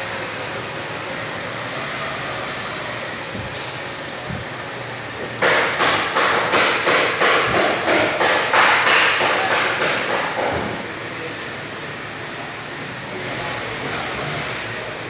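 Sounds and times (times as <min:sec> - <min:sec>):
electric fan whirring: 0:00.0 - 0:15.0
sharp evenly spaced knocks: 0:05.2 - 0:10.8.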